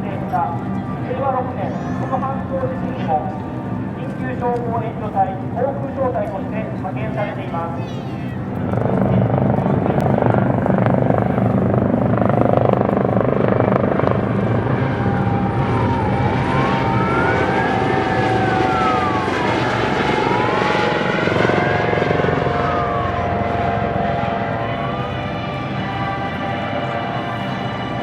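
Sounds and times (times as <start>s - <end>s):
helicopter flying: 0.0s - 28.0s
wailing siren: 12.7s - 28.0s.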